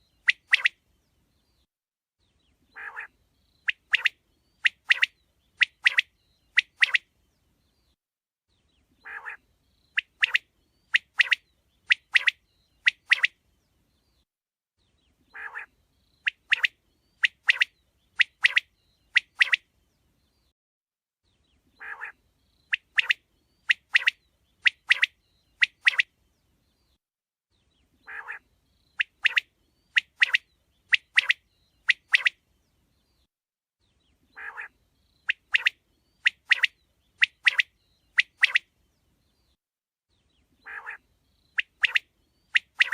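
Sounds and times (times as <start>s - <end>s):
quail singing: 2.7s - 7.0s, 9.0s - 9.4s, 15.3s - 15.7s, 21.8s - 26.1s, 28.0s - 32.4s, 34.3s - 38.6s, 40.6s - 42.9s.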